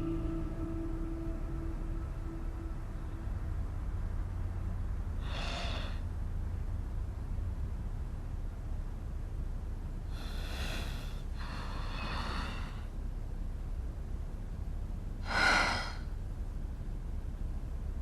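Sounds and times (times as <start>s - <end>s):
low rumble: 0.0s - 18.0s
person breathing heavily: 5.2s - 6.0s, 10.1s - 12.9s, 15.2s - 16.1s.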